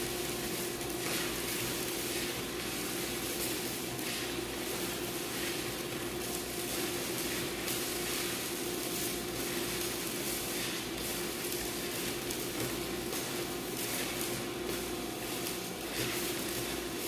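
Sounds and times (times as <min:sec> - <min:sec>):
steady hum: 0:00.0 - 0:17.0
welding arc crackling: 0:00.0 - 0:17.0.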